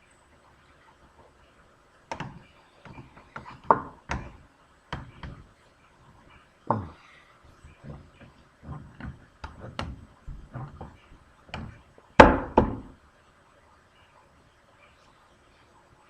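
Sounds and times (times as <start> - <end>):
wood and clamps knocking: 2.1 - 5.5, 7.7 - 13.0.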